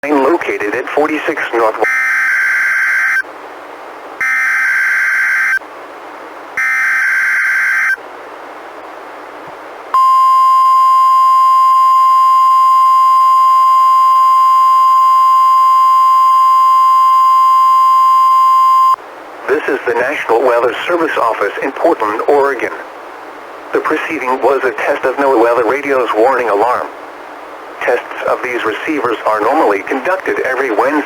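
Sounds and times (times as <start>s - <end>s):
steady warning alarm tone: 1.8s - 3.3s, 4.2s - 5.6s, 6.6s - 8.0s, 10.0s - 19.0s.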